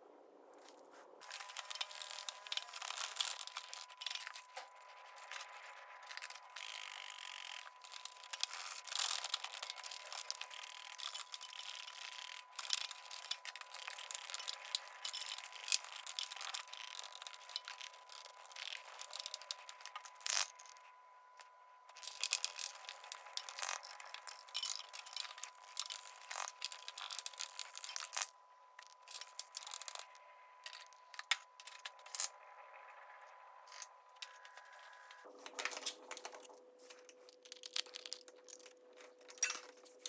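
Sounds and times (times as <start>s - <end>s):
clicks and clinks: 35.8s - 40.0s.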